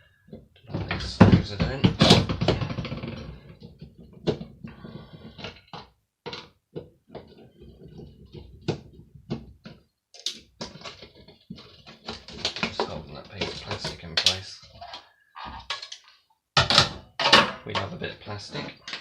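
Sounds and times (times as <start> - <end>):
hand tools clicking and knocking: 18.6 - 19.0.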